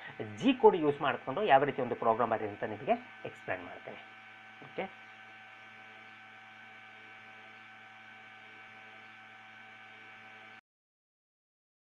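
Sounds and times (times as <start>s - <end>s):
low electrical hum: 0.0s - 10.6s.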